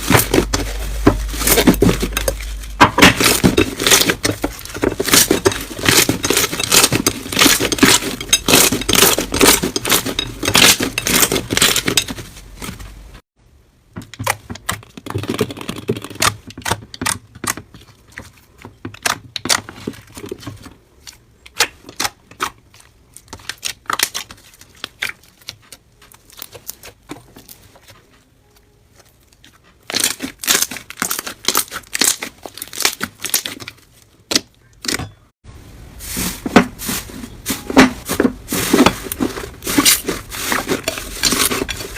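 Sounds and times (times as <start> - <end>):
slime crackling and popping: 29.0 - 34.5.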